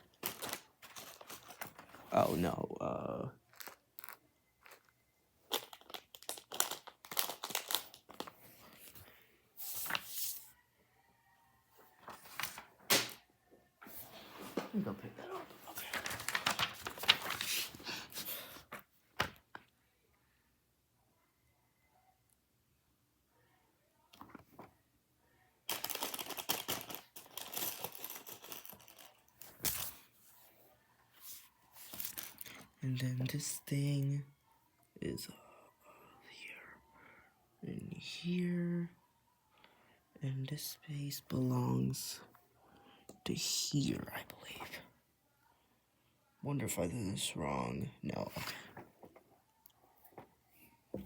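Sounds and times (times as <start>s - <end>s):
plastic bag crinkling: 0.0s - 2.2s, 3.5s - 4.9s, 5.5s - 8.3s, 15.7s - 17.6s, 25.7s - 29.3s
plastic pieces clicking: 5.5s - 8.2s.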